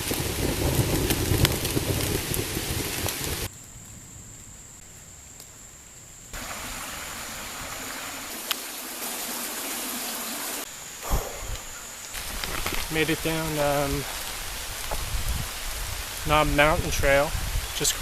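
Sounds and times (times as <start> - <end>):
falling rain: 0.0 - 18.0
creek rushing: 6.4 - 18.0.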